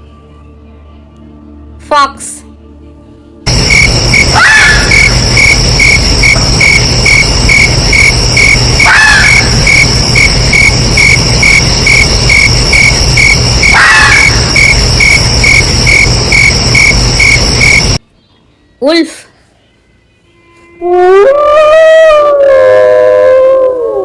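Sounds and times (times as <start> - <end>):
crickets chirping: 3.5 - 18.0
fox calling: 3.7 - 15.3.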